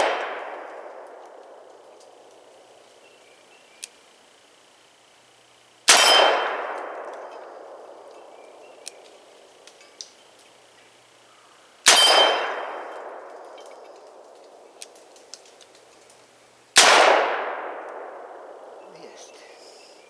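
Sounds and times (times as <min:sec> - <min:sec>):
long gunshot echo: 0:00.0 - 0:01.1, 0:05.9 - 0:07.8, 0:11.8 - 0:13.4, 0:16.8 - 0:18.5.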